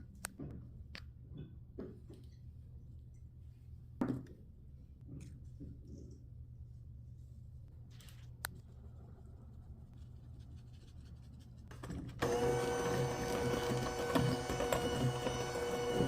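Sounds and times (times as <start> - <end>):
electric hand mixer motor whine: 12.2 - 16.0.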